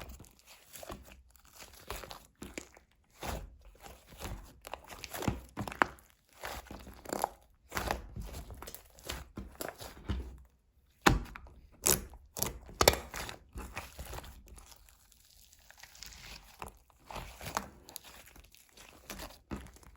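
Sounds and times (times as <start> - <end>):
slime crackling and popping: 11.7 - 19.9.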